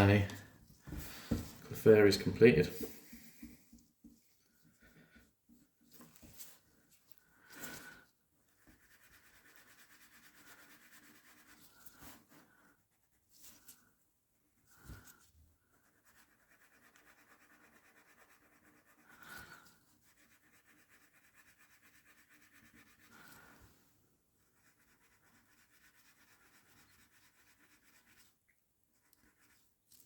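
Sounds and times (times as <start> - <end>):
rubbing on a card surface: 5.9 - 13.9, 14.7 - 23.6, 24.4 - 30.0.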